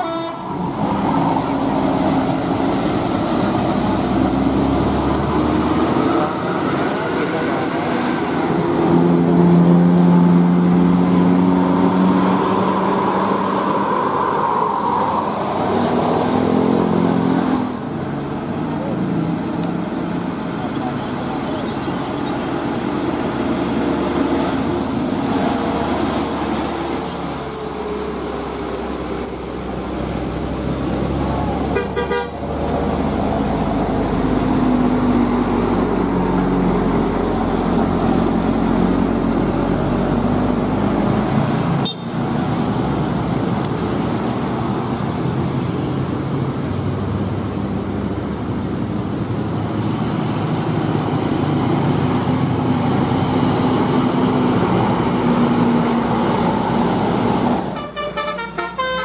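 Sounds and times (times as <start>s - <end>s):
musical air horns playing tunes: 0.0s - 0.5s, 31.8s - 32.3s, 57.8s - 59.0s
diesel engine: 0.0s - 59.0s
road noise: 0.0s - 59.0s.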